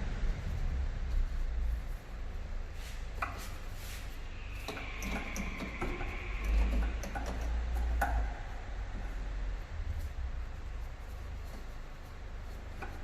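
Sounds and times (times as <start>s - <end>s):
low rumble: 0.0s - 3.1s, 4.2s - 12.4s
light clicks and taps of parts: 4.6s - 9.2s, 12.4s - 13.0s.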